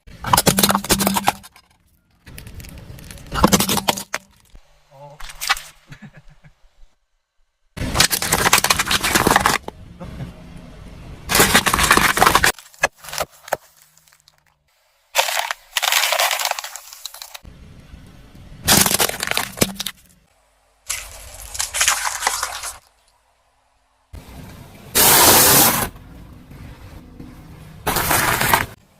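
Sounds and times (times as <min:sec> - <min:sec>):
objects crunching under car tyre: 0:00.1 - 0:04.6, 0:07.8 - 0:09.8, 0:11.3 - 0:17.4, 0:18.7 - 0:20.3, 0:20.9 - 0:23.0, 0:27.8 - 0:28.8.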